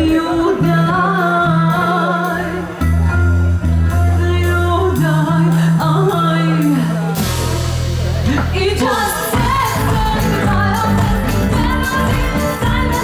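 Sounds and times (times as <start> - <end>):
person singing: 0.0 - 3.1, 8.3 - 13.0
live band playing: 0.0 - 13.0
sustained bass notes: 0.0 - 13.0.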